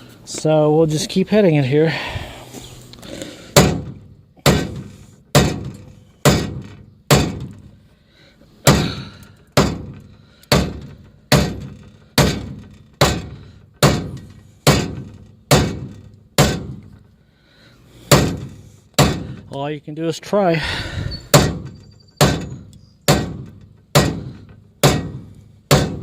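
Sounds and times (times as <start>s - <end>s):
hammer striking steel: 3.6s - 7.5s, 8.6s - 16.9s, 18.1s - 19.4s, 21.3s - 26.0s.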